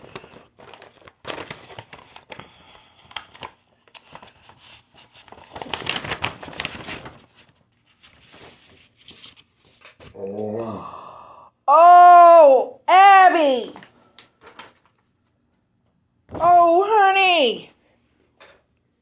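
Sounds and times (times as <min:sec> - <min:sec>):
paper crinkling and rustling: 0:00.0 - 0:10.2, 0:13.8 - 0:15.2.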